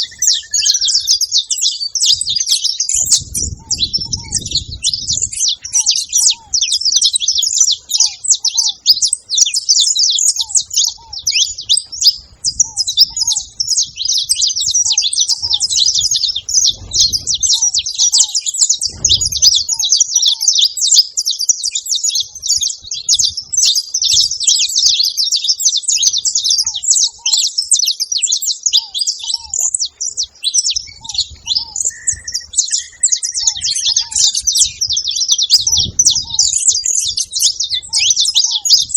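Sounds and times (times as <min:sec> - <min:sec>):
finches chirping rapidly: 0:00.0 - 0:38.9.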